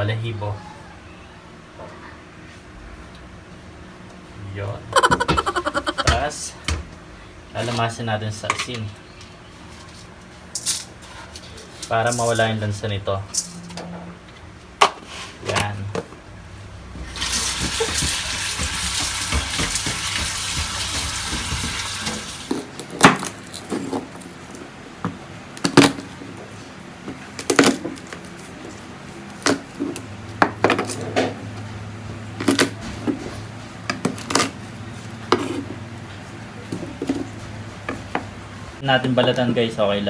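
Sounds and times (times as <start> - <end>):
tap water running: 17.0 - 22.6.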